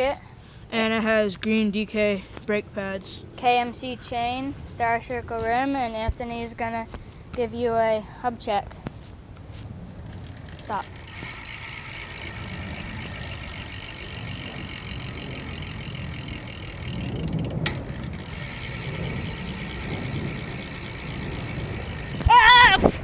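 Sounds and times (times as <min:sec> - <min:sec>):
bike hub freewheel ticking: 0:10.1 - 0:22.8.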